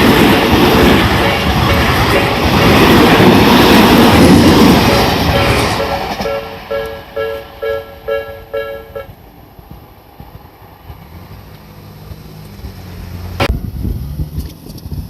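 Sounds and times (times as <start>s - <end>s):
level crossing warning bell: 0.9s - 9.1s
vehicle engine: 4.0s - 15.0s.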